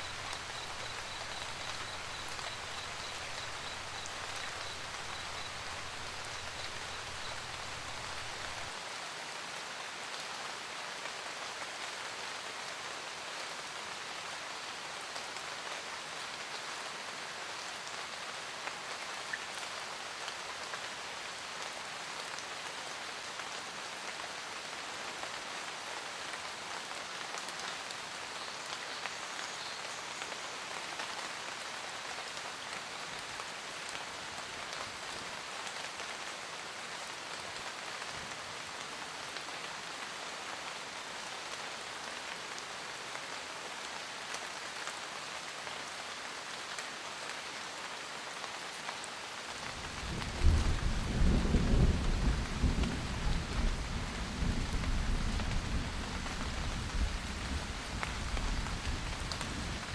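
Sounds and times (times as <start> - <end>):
steady rain: 0.0 - 59.9
deep rumble of thunder: 49.9 - 59.9.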